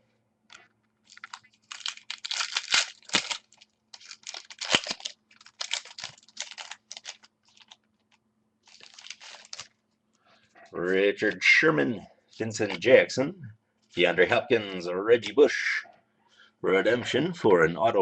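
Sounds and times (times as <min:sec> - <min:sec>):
wrappers crinkling and tearing: 0:00.5 - 0:09.8.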